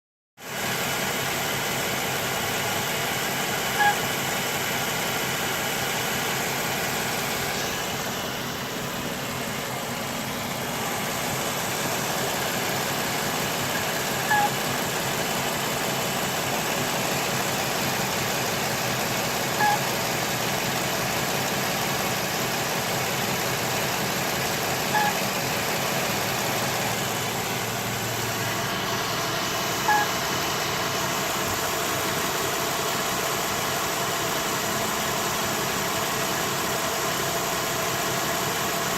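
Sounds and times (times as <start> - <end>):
car engine idling: 0.4 - 38.9
water pump squeal: 3.6 - 4.5, 11.4 - 17.3, 19.2 - 20.3, 24.8 - 25.4, 29.7 - 30.4.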